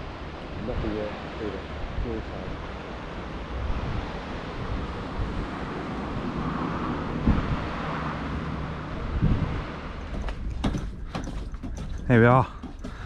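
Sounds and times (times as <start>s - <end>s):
sea rushing: 0.0s - 13.0s
wind buffeting microphone: 0.0s - 13.0s
dull knocks: 9.2s - 13.0s.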